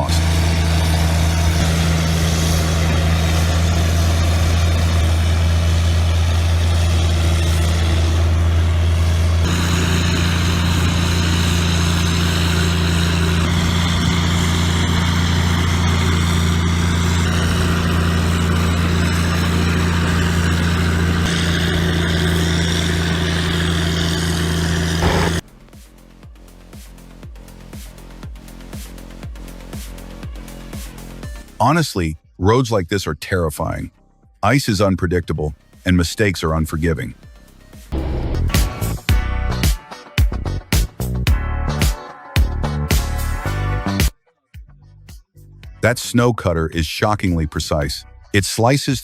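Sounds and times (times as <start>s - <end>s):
snowblower engine droning: 0.0s - 31.2s.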